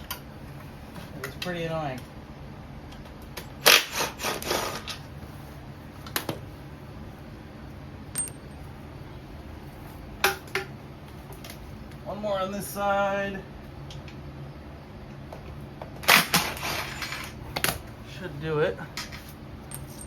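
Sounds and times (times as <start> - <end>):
metal tools and bolts clinking: 8.1 - 8.7, 19.1 - 20.0.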